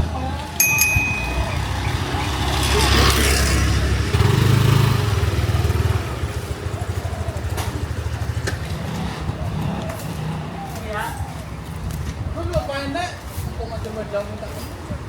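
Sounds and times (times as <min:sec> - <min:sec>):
motorbike engine running: 0:00.6 - 0:12.3.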